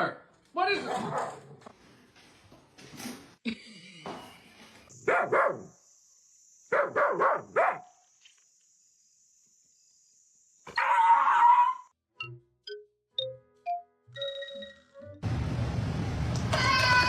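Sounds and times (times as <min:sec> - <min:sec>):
dog barking: 0:05.0 - 0:05.7, 0:06.7 - 0:07.9.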